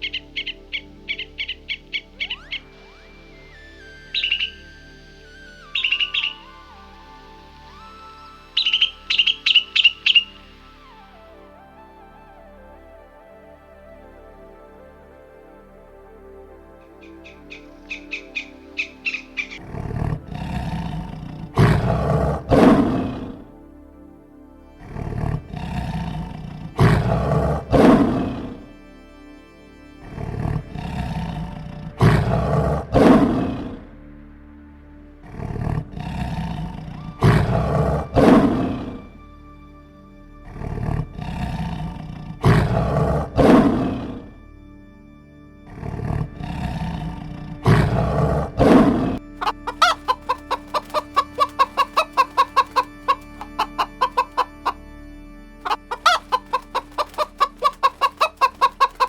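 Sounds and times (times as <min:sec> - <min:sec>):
soft background music: 0:00.0 - 0:59.0
rapid clucking: 0:49.4 - 0:54.8, 0:55.6 - 0:59.0.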